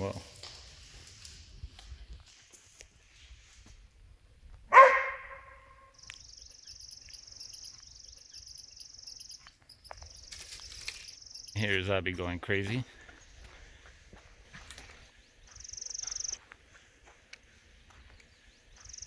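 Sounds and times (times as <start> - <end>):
dog barking: 4.7 - 5.9
insects buzzing: 5.9 - 11.9, 12.8 - 16.8, 18.7 - 19.0.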